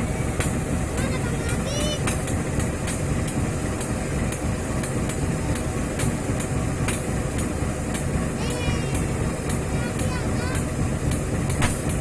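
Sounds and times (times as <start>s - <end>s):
sharp ticking: 0.0s - 12.0s
train rumbling past: 0.0s - 12.0s.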